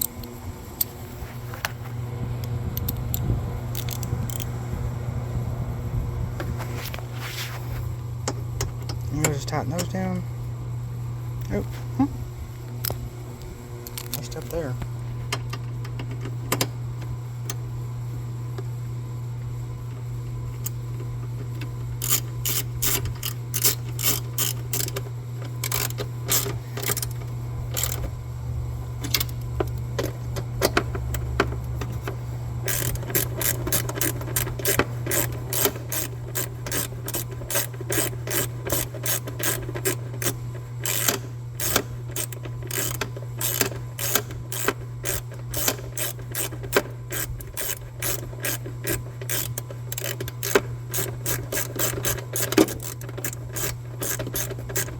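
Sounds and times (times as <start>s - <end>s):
ratchet wrench clicking: 0.0s - 0.2s, 3.7s - 4.5s, 22.0s - 28.1s, 30.6s - 54.9s
steady low hum: 0.0s - 54.9s.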